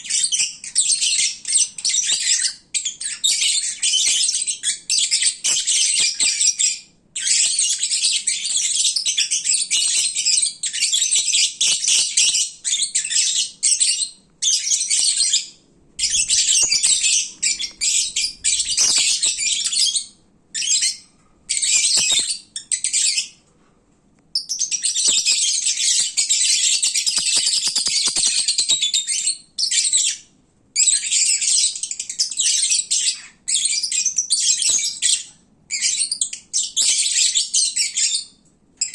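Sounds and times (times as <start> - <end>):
lovebirds chattering: 9.4 - 23.2, 24.5 - 28.8.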